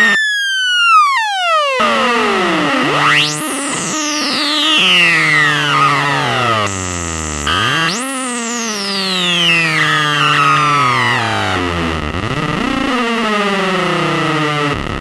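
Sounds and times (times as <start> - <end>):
synthesizer sweep effects: 0.0 - 11.7
low synthesizer tone: 1.7 - 12.5.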